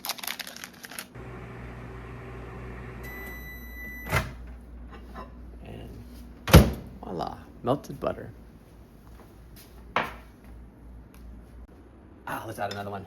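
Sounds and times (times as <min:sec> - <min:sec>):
microwave oven humming: 0:01.2 - 0:05.9
high beep: 0:03.0 - 0:04.2.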